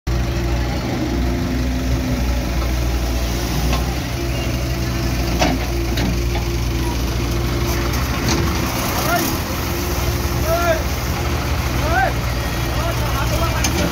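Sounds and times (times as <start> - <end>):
diesel engine running: 0.1 - 13.9.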